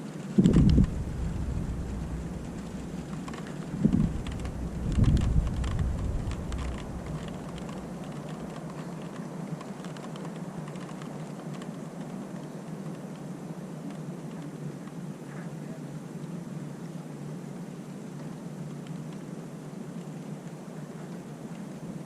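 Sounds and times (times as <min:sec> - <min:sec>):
steady rain: 0:00.0 - 0:22.0
raindrops ticking on hard surface: 0:00.2 - 0:15.0, 0:18.1 - 0:22.0
thunder rumble: 0:00.3 - 0:09.0.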